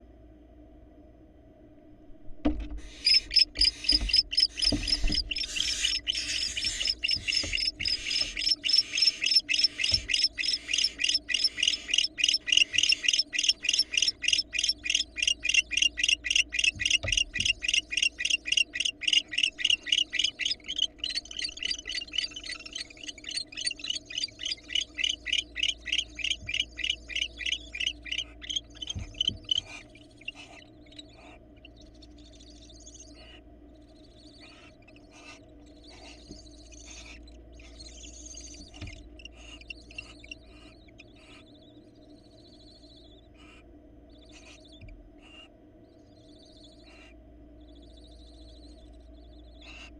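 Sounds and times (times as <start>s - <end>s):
dull thumps of birds moving: 2.3s - 11.3s, 28.8s - 29.8s
owls chittering calls: 2.8s - 33.4s, 34.2s - 41.5s.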